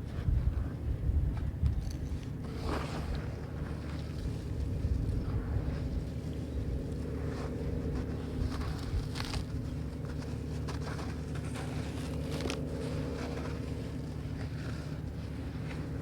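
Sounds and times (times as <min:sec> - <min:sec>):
steady low rumble: 0:00.0 - 0:16.0
soft crackles and patter: 0:03.8 - 0:16.0.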